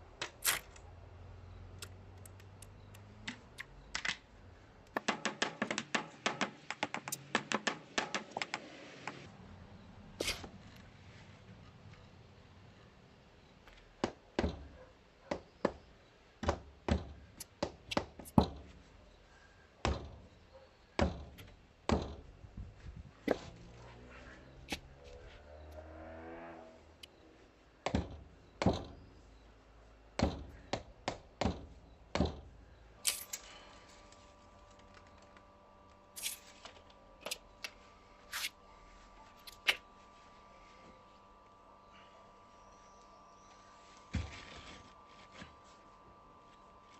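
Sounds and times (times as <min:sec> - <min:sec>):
knocks on stone paving: 0:04.9 - 0:09.2
faint steady hum: 0:26.8 - 0:46.9.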